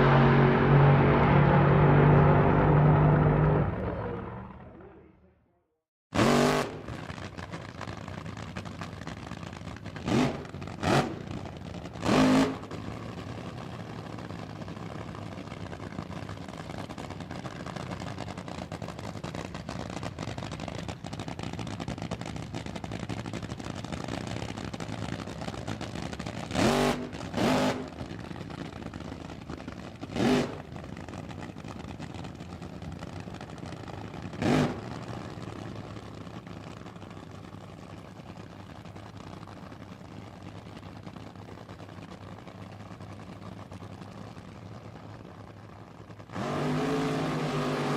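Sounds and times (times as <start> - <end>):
engine revving: 0.0 - 4.9, 6.2 - 7.0, 10.0 - 11.4, 12.0 - 12.9, 26.5 - 28.0, 30.1 - 30.7, 34.3 - 35.2, 46.2 - 47.9
sports car engine idling: 6.8 - 12.0, 12.6 - 46.3.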